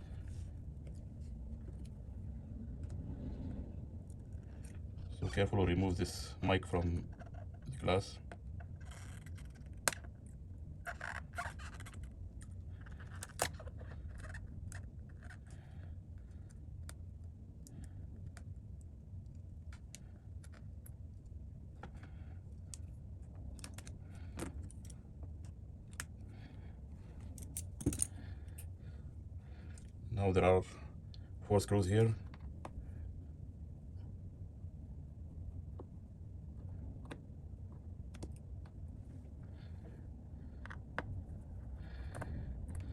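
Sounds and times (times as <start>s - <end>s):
steady low hum: 0.0s - 42.9s
small tools clicking and scraping: 27.2s - 28.7s.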